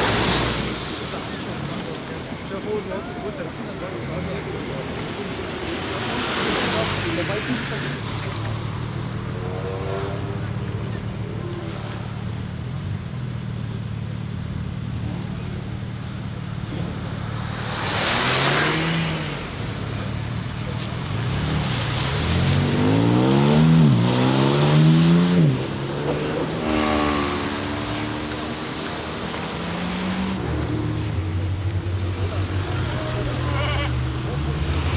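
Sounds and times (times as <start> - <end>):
car engine accelerating hard: 15.0 - 34.9.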